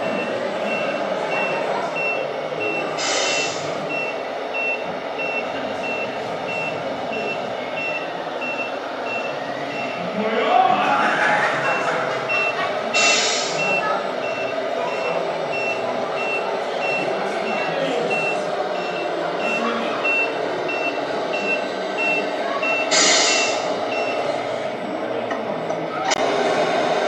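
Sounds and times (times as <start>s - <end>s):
reversing beeper: 0.0s - 10.2s, 10.8s - 24.3s
air brake hiss: 3.0s - 3.7s, 13.0s - 13.6s, 22.9s - 23.7s.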